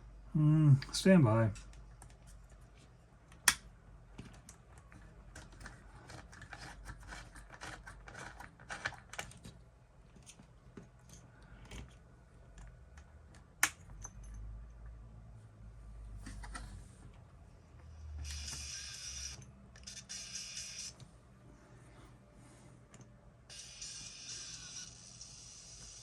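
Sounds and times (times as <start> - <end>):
small parts clicking and scratching: 4.2 - 14.3.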